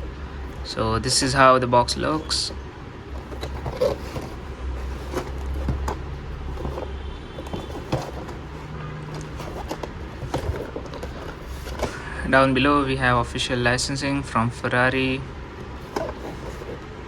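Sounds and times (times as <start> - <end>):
cardboard box clicks and rustles: 2.0 - 12.2, 15.5 - 17.0.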